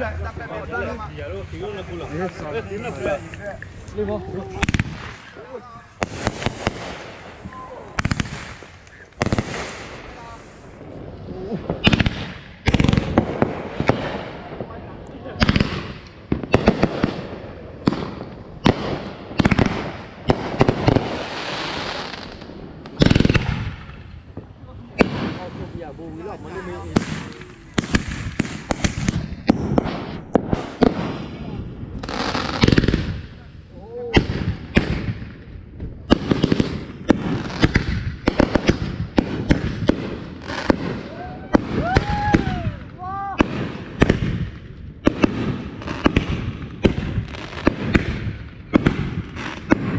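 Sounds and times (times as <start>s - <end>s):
fireworks hiss: 0.0s - 14.5s, 15.4s - 31.4s
fireworks bangs: 0.0s - 49.9s
fireworks crackling: 0.0s - 49.9s
falling firework whistle: 41.0s - 42.8s.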